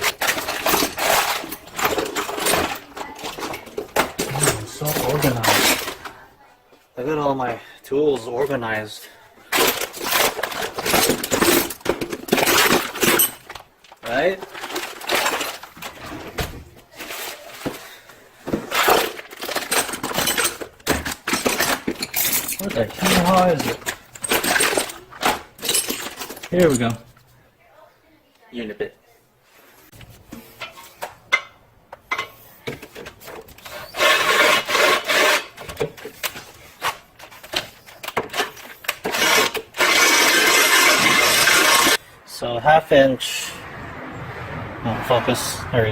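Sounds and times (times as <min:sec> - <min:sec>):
metal tools clattering in a drawer: 0:00.0 - 0:06.2, 0:09.5 - 0:27.1, 0:30.4 - 0:42.0
power drill cutting a hole: 0:39.8 - 0:42.0.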